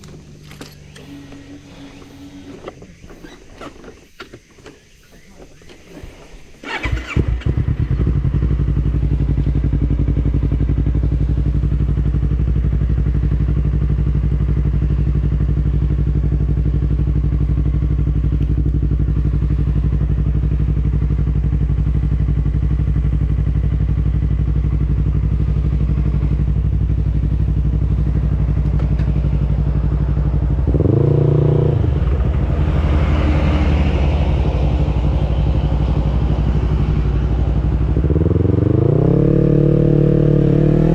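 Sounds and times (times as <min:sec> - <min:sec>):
engine starting and idling: 0:00.0 - 0:09.0.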